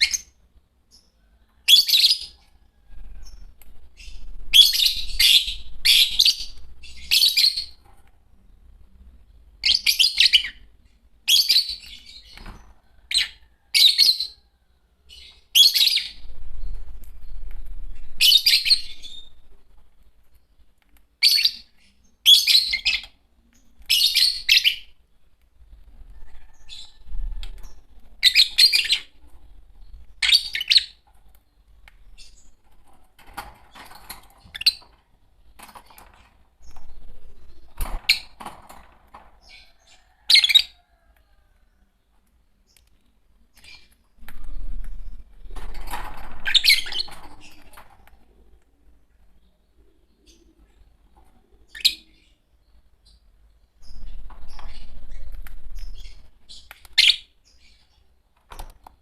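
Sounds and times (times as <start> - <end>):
quiet bird chatter: 0.0 - 59.0
lovebirds chirping shrilly: 1.7 - 7.8, 15.1 - 19.6, 21.2 - 23.2, 23.9 - 25.0, 26.2 - 29.2, 29.8 - 31.0, 46.3 - 47.8, 53.8 - 58.0.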